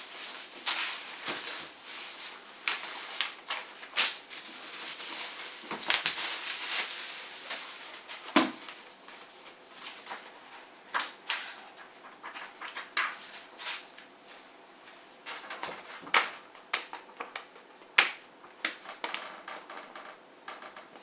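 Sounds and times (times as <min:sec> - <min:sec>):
paper rustling: 0:00.0 - 0:16.4.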